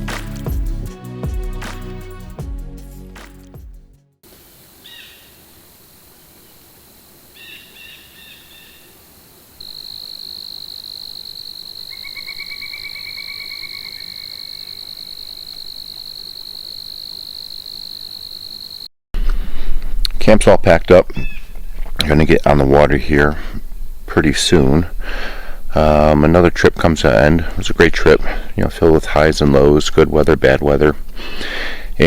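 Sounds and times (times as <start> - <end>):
frog-like pulsed trills: 9.6 - 18.9
steady high-pitched animal tone: 9.6 - 18.9.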